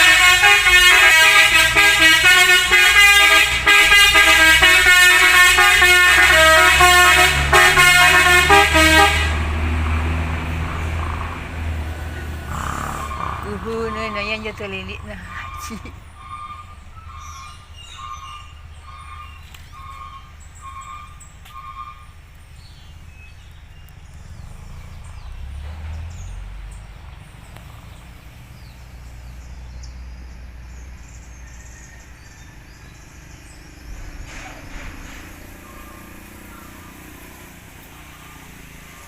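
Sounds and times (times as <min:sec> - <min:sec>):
vehicle engine rumble: 0:00.0 - 0:39.0
birds chirping faintly: 0:10.0 - 0:39.0.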